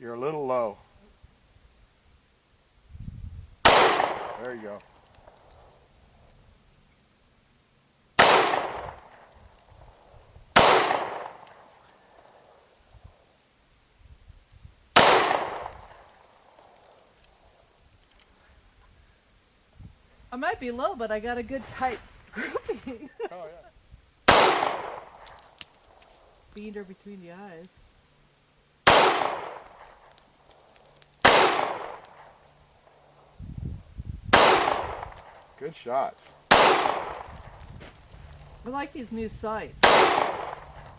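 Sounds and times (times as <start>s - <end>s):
pistol shots echoing: 3.6s - 5.4s, 8.2s - 9.4s, 10.6s - 12.6s, 15.0s - 17.0s, 24.3s - 25.5s, 28.8s - 33.2s, 34.3s - 35.6s, 36.4s - 37.5s, 39.7s - 40.9s.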